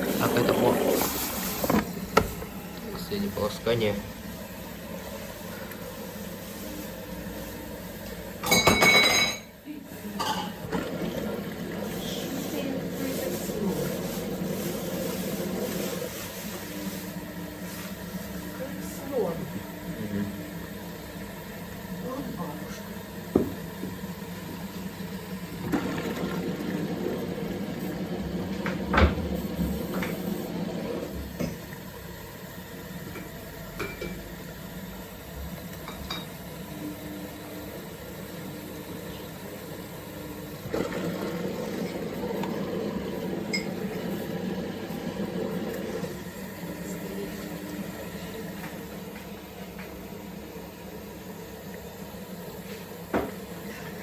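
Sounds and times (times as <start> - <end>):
washing machine drum sloshing water: 0.0 - 4.2, 10.4 - 19.4, 20.8 - 32.0, 40.5 - 50.3.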